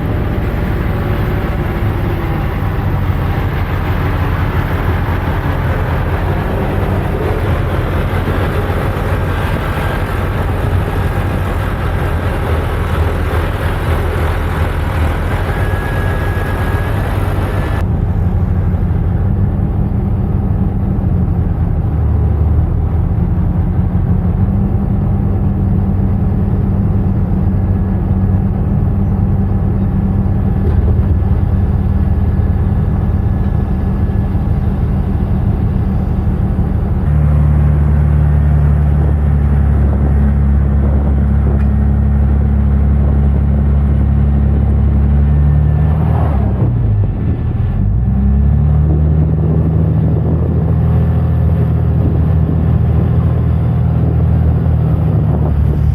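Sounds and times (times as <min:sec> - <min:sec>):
tractor engine running: 0:00.0 - 0:55.9.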